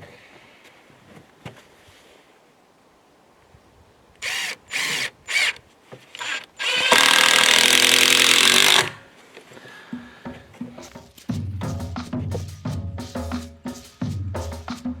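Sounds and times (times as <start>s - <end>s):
power drill running: 4.2s - 9.0s.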